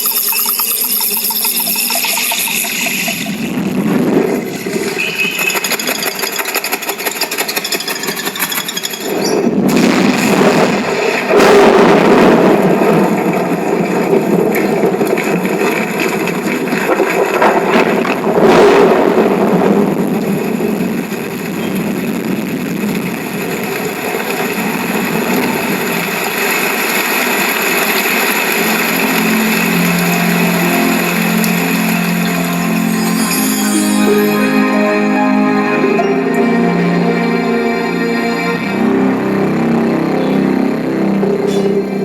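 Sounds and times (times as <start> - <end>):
noisy sound effects from speakers: 0.0 - 42.0
steady tune: 28.4 - 42.0.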